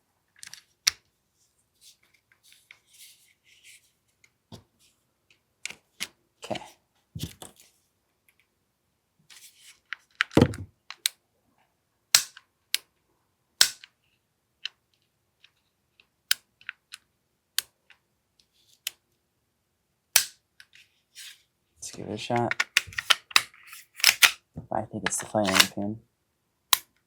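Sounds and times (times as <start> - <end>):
pistol mechanism clicks and snaps: 12.1 - 12.9, 13.6 - 13.9, 20.2 - 20.4, 22.5 - 24.4, 25.5 - 25.7.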